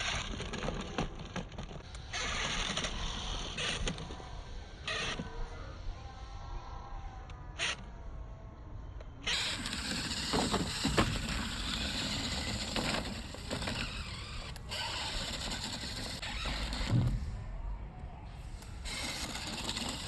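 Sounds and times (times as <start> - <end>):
toy car motor and wheels hissing: 0.0 - 5.4, 9.2 - 17.0, 18.6 - 20.0.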